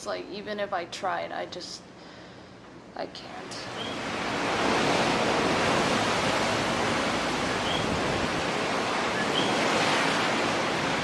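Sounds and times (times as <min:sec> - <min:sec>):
hurricane wind roaring: 0:03.4 - 0:11.0.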